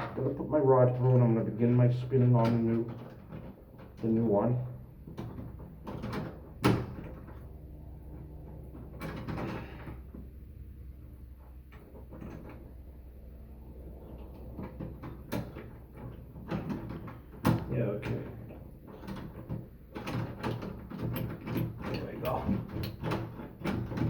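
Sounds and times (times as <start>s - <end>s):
low steady hum: 0.0s - 24.0s
doorknob clicking and rattling: 5.0s - 7.5s, 14.4s - 24.0s.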